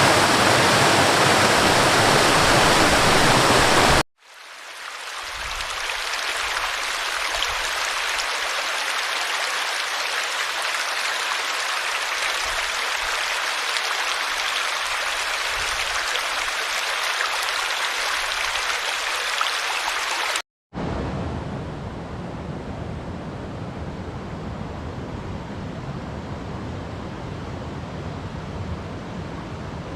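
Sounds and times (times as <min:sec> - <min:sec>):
water rushing and tumbling: 0:00.0 - 0:20.4.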